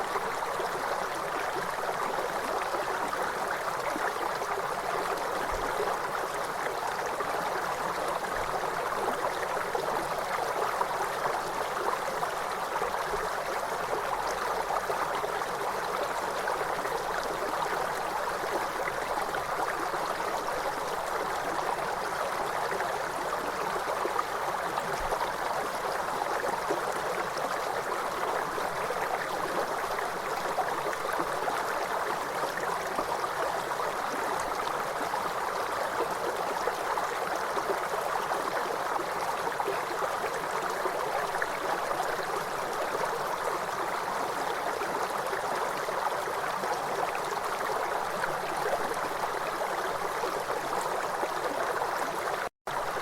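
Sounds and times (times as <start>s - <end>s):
river water flowing: 0.0s - 53.0s.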